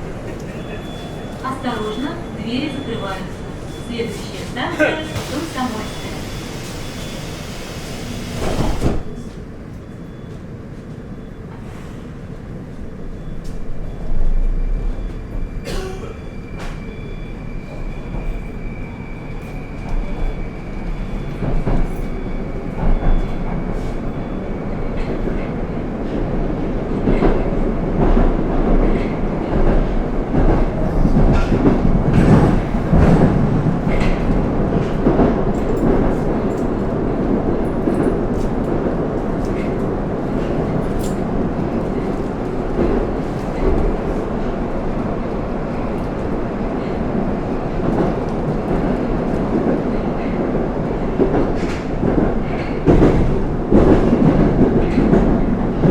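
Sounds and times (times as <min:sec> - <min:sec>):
train doors closing with a thud: 0:00.0 - 0:55.9
train running noise: 0:00.0 - 0:55.9
knocks and clicks from rails: 0:51.0 - 0:55.9.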